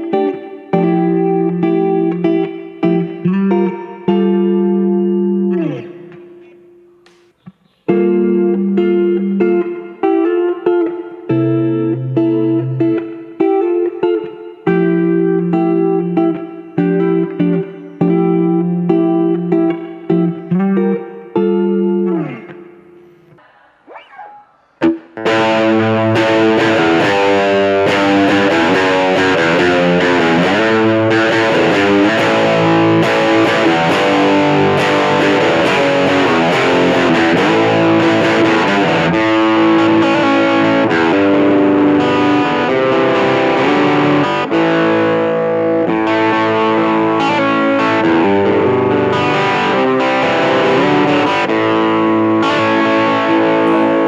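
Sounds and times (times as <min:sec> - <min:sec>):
distorted electric guitar: 0:00.0 - 0:54.0.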